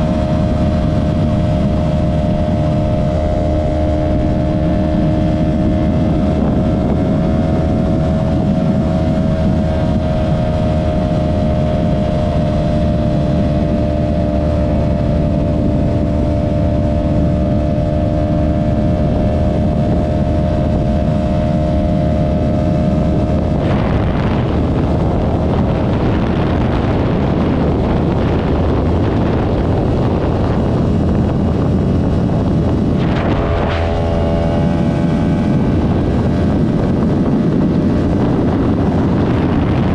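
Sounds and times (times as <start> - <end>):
motorcycle engine running: 0.0 - 39.9
wind noise on microphone: 0.0 - 39.9.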